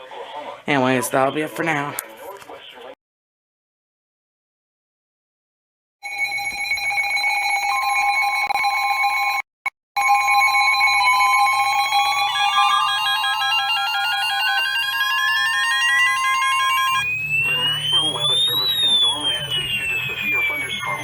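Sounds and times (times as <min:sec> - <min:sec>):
steady alert tones: 0:10.0 - 0:21.0
fast pulsing beeps: 0:10.6 - 0:21.0
rising siren tone: 0:11.5 - 0:21.0.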